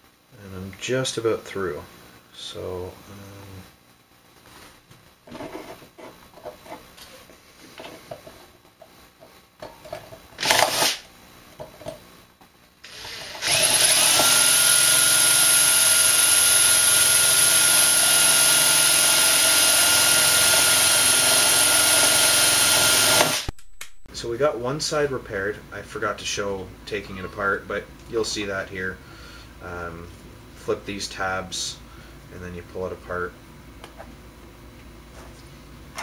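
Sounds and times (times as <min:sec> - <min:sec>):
electric power tool whining: 0:12.9 - 0:23.5.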